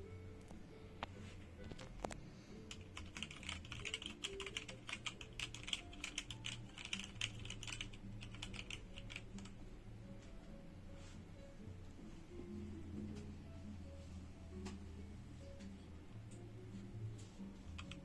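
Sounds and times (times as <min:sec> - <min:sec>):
background music: 0:00.0 - 0:18.0
mechanical keyboard key clacks: 0:02.8 - 0:09.5.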